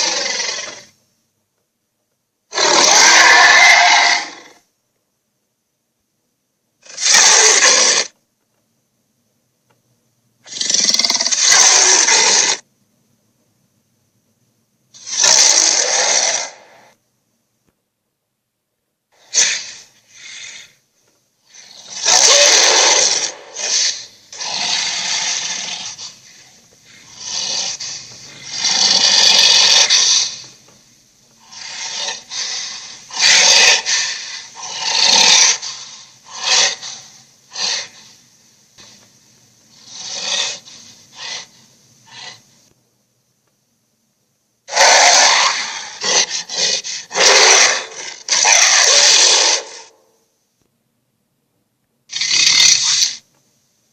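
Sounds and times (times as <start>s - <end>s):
monster growls and roars: 21.6s - 26.1s, 44.7s - 49.9s.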